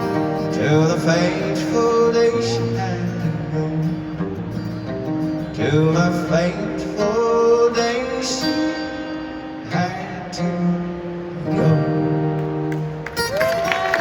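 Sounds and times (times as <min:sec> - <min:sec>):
acoustic guitar strumming: 0:00.0 - 0:14.0
person singing: 0:00.4 - 0:03.8
audience applause: 0:12.4 - 0:14.0.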